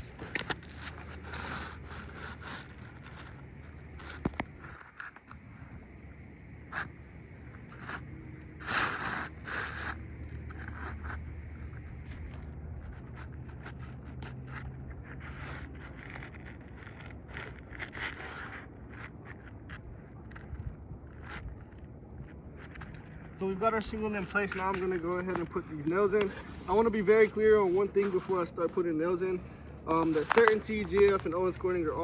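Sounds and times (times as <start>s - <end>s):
low steady hum: 0.0s - 32.0s
shingle scraping on roof: 7.6s - 21.8s, 22.4s - 28.8s.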